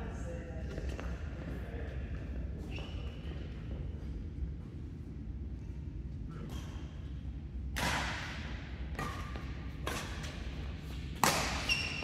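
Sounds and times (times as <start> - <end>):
racquet hitting shuttlecock: 7.7 - 12.0.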